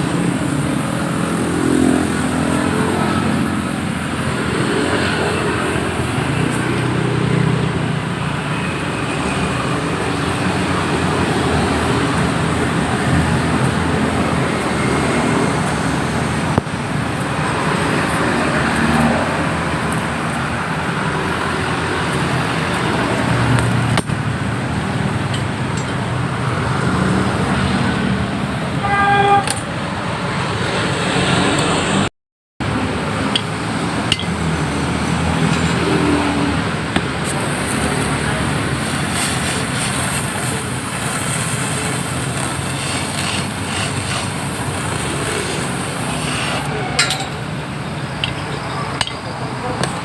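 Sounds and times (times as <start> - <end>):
motor vehicles passing: 0.0 - 50.0
car horn toot: 28.8 - 29.6.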